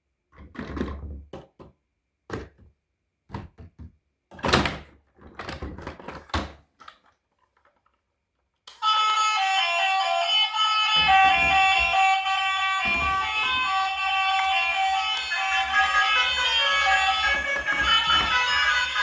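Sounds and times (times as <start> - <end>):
music: 8.8 - 19.0
objects knocking and scraping: 11.0 - 14.7, 15.6 - 19.0.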